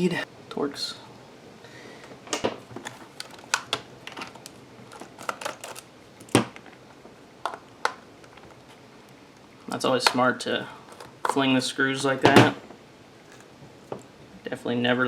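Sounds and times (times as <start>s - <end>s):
screwdriver clicking on plastic case: 5.0s - 6.4s.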